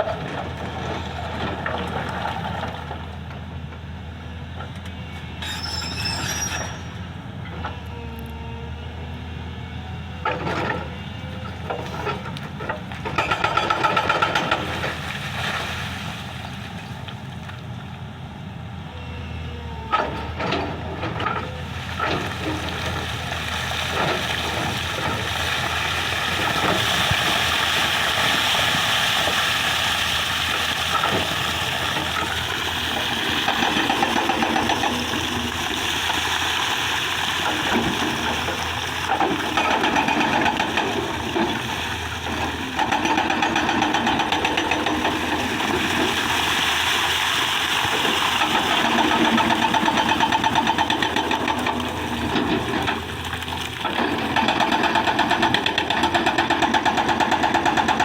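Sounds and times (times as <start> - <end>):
excavator diesel engine under load: 16.3 - 58.0.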